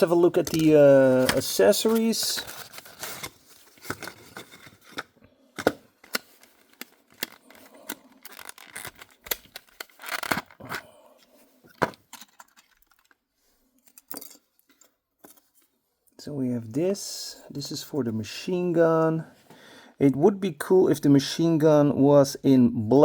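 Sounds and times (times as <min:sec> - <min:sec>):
plastic packaging rustling: 0:00.0 - 0:10.9, 0:11.6 - 0:15.6.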